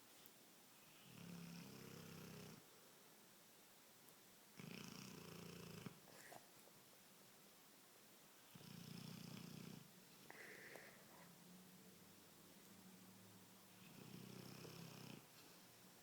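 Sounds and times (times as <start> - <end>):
dog snoring: 0.9 - 2.6, 4.6 - 6.3, 8.5 - 10.5, 13.7 - 15.3.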